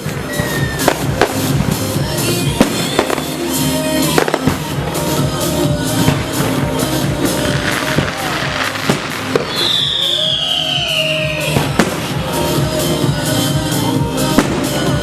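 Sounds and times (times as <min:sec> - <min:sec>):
firework whistle falling in pitch: 0:00.0 - 0:01.3, 0:07.7 - 0:12.2
fireworks bangs: 0:00.0 - 0:15.0
loud background music: 0:00.0 - 0:15.0.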